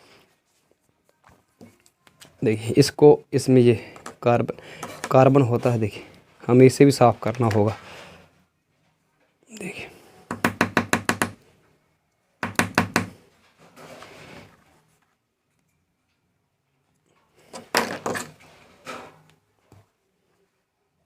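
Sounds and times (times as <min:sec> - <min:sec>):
soft scraping: 0:13.5 - 0:15.2.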